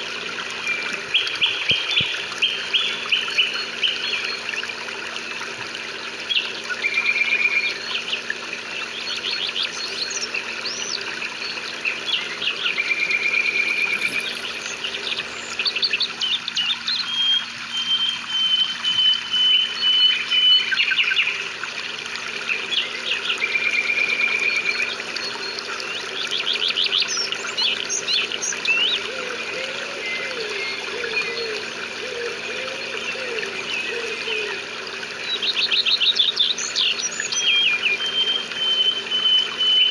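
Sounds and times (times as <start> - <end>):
birds chirping and trilling: 7.3 - 23.6, 24.5 - 39.9
rain hiss: 13.7 - 15.8, 24.5 - 35.3.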